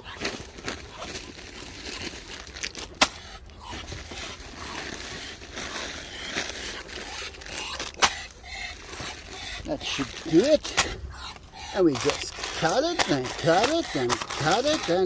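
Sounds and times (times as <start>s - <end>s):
food rustling and crackling: 0.0s - 15.0s.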